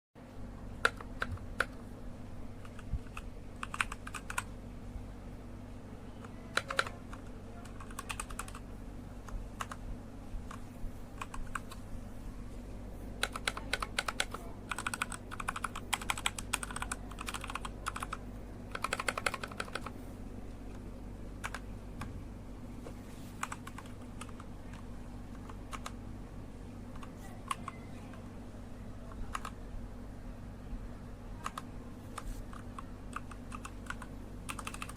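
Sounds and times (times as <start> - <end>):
steady low hum: 0.2 - 34.9
mechanical keyboard keys clacking: 0.8 - 1.8, 2.6 - 4.5, 6.2 - 8.6, 9.2 - 9.8, 11.2 - 11.8, 13.2 - 19.9, 21.4 - 21.7, 23.4 - 26.0, 26.9 - 28.2, 29.1 - 29.6, 31.4 - 34.9.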